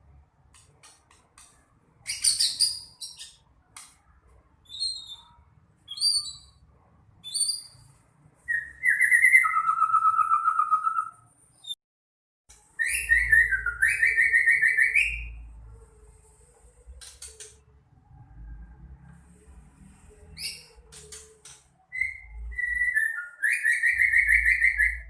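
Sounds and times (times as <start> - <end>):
songbird trilled whistles: 21.9 - 25.0.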